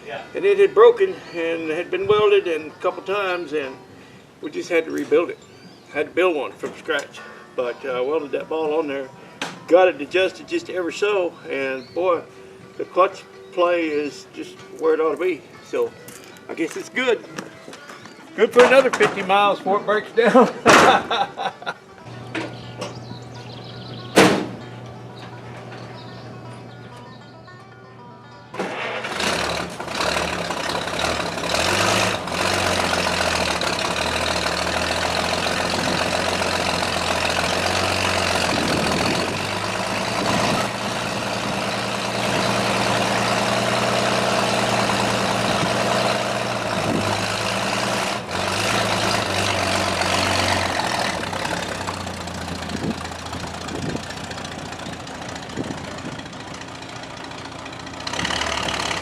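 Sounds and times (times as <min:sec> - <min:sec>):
car engine running: 0:28.9 - 0:59.0.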